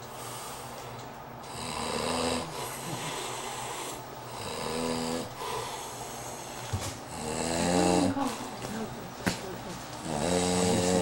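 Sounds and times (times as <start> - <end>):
man snoring: 1.4 - 5.8, 7.1 - 8.3, 10.0 - 11.0.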